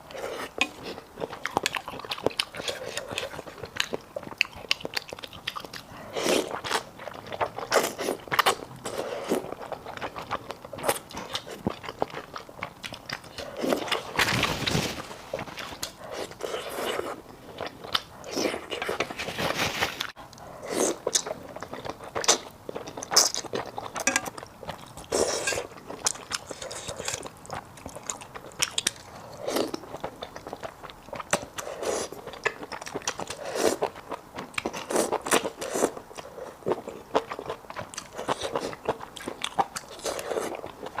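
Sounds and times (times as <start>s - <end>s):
person chewing and biting: 20.8s - 41.0s.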